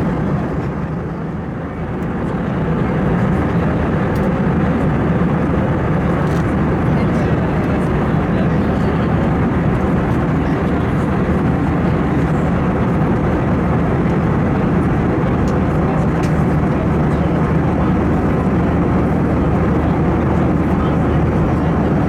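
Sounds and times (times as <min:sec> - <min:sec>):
airplane cabin rush of air: 0:00.0 - 0:22.0.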